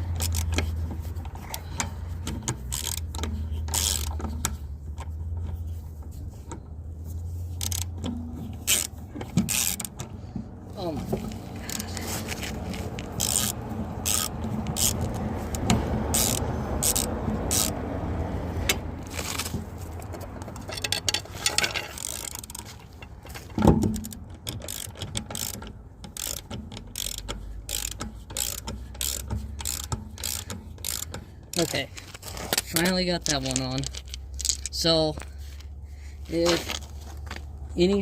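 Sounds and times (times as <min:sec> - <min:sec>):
hand ratchet clicking: 0:00.0 - 0:05.6, 0:07.5 - 0:10.2, 0:11.0 - 0:17.8, 0:20.1 - 0:34.9.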